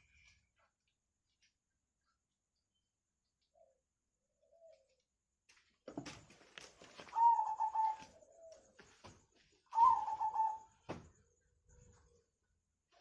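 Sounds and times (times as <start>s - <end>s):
doves cooing: 6.9s - 8.9s, 9.7s - 10.8s.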